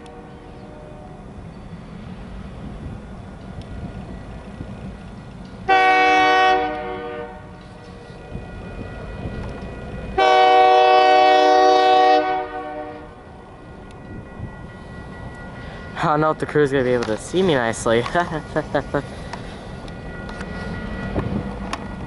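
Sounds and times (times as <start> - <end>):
low train rumble: 0.0 - 22.0
locomotive air horn: 5.7 - 7.9, 10.2 - 13.2.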